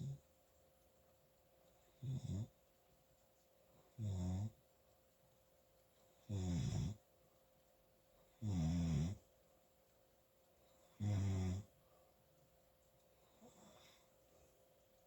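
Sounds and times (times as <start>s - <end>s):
loud snoring: 6.3s - 7.0s, 8.4s - 9.2s, 11.0s - 11.7s.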